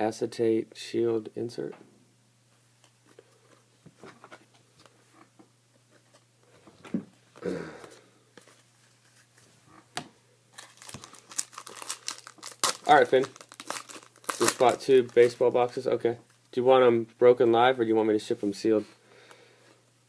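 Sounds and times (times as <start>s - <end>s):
foil wrapper crinkling: 10.5s - 15.8s.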